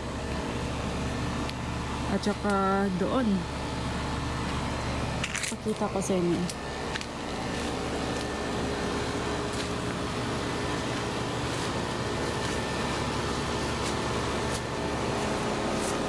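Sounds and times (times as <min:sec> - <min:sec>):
machine hum and whirring: 0:00.0 - 0:16.0.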